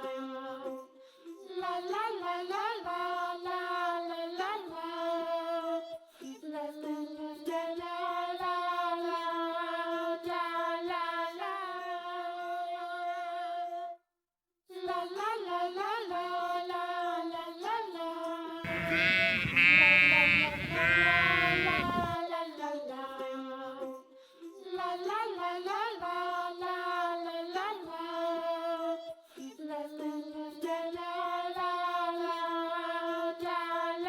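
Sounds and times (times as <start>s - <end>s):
high voice humming a melody: 18.7s - 22.2s
sheep bleating: 18.7s - 22.2s.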